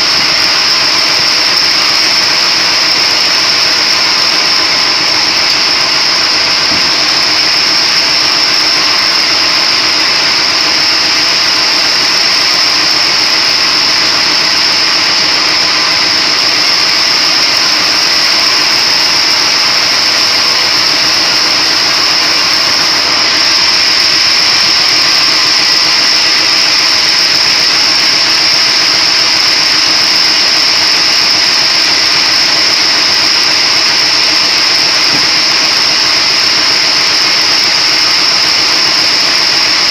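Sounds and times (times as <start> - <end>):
high-pitched machine whine: 0.0 - 39.9
splitting machine running: 0.0 - 39.9.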